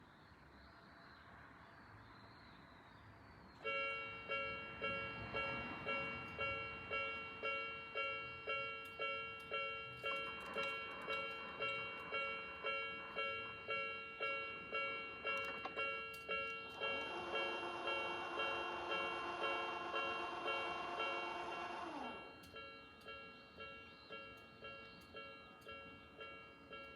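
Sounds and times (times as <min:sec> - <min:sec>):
level-crossing alarm ringing: 0:03.6 - 0:26.9
lower alarm tones: 0:03.7 - 0:24.0.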